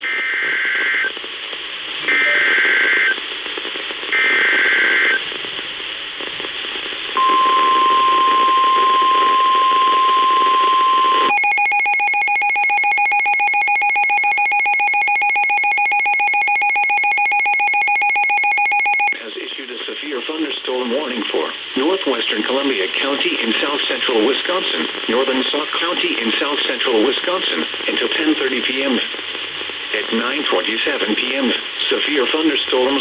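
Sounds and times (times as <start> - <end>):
radio static hiss: 0.1 - 7.2, 19.2 - 33.0
rapidly pulsing alarm beep: 7.2 - 19.2
steady warning alarm tone: 7.2 - 19.2.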